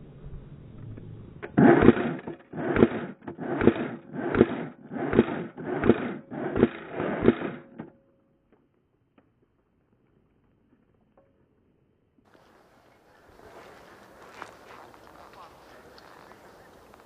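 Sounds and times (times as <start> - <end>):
crunching footsteps: 12.3 - 17.0.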